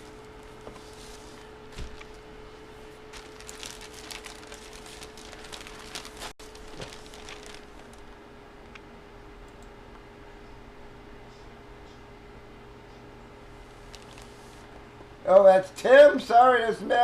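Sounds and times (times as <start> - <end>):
cards and plastic wrappers crinkling: 3.0 - 8.2, 13.7 - 14.6.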